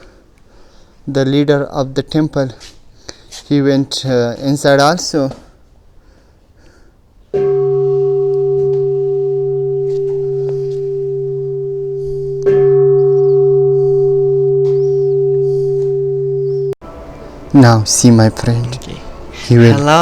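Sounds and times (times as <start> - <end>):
bowl bell ringing: 7.4 - 16.8.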